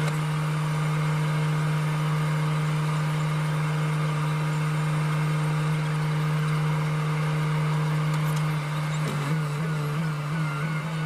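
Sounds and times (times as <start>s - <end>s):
power tool motor running: 0.0s - 11.0s.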